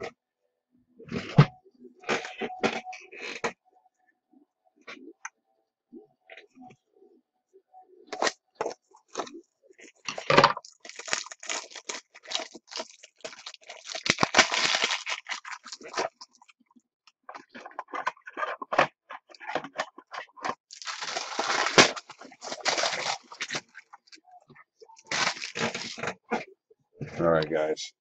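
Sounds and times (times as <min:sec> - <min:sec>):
plastic crinkling and rustling: 0:10.0 - 0:16.5, 0:17.3 - 0:24.2, 0:25.0 - 0:26.4
clicks and scrapes: 0:17.2 - 0:24.2, 0:25.0 - 0:26.5.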